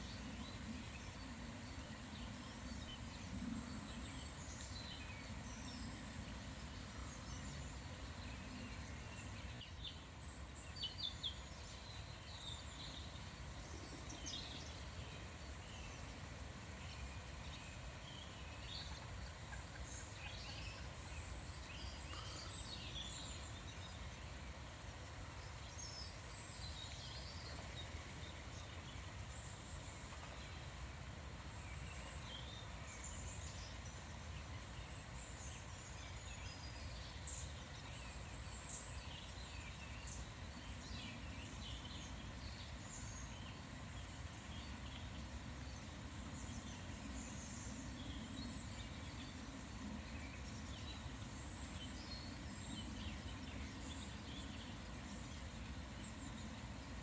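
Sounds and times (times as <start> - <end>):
small birds chirping and singing: 31.8 - 57.0.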